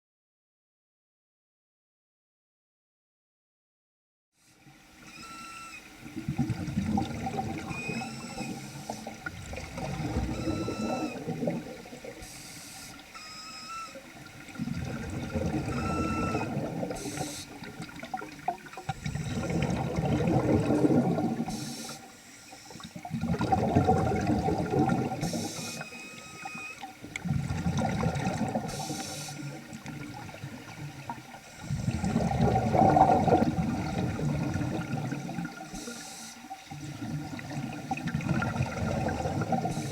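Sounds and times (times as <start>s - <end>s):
underwater breath and bubbles: 4.6s - 39.9s
short high squeaks: 5.1s - 5.9s, 7.6s - 9.0s, 10.2s - 11.3s, 12.2s - 14.1s, 15.6s - 17.6s, 25.3s - 27.0s.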